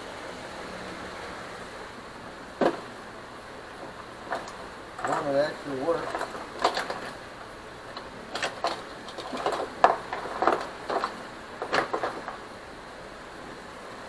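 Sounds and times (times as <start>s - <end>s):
small hard objects clattering: 2.5s - 3.1s, 3.7s - 12.6s.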